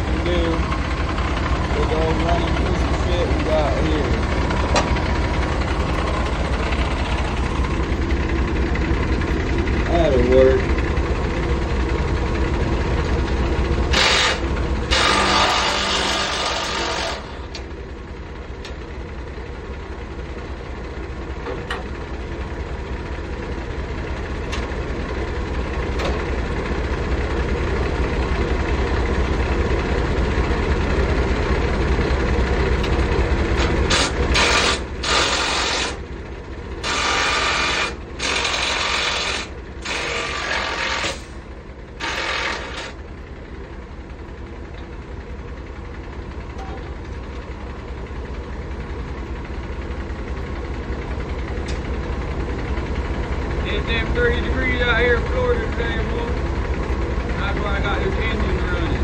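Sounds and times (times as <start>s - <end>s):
diesel truck engine idling: 0.0s - 59.0s
power wrench bursts: 13.9s - 17.6s, 33.6s - 36.0s, 36.8s - 41.4s, 42.0s - 43.0s.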